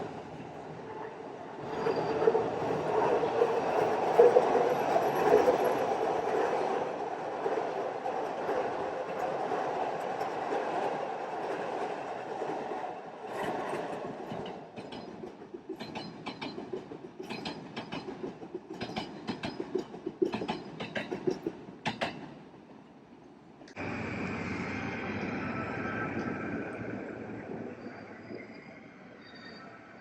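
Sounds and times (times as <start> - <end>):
train running on rails: 0.0 - 30.0
wheels clicking over rail joints: 7.4 - 22.4.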